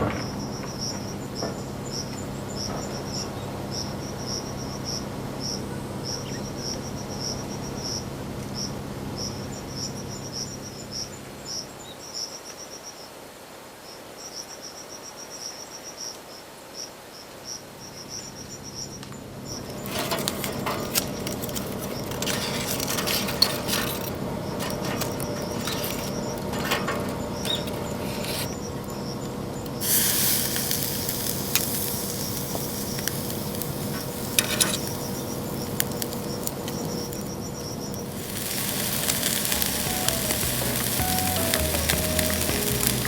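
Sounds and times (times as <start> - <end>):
sizzling and crackling: 19.6 - 28.7, 29.6 - 43.0.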